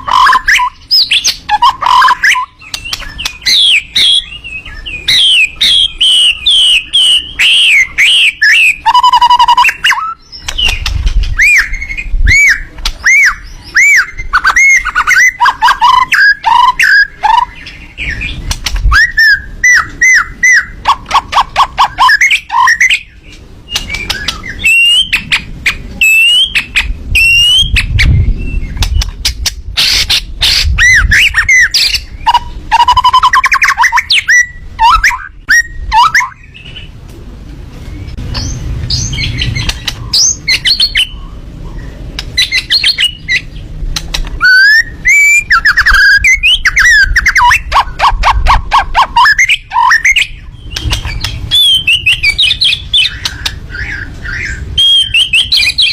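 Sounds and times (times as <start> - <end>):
songbird chirping and whistling: 0.0 - 37.0, 37.8 - 55.9
low rumbles: 23.1 - 33.2, 34.4 - 55.9.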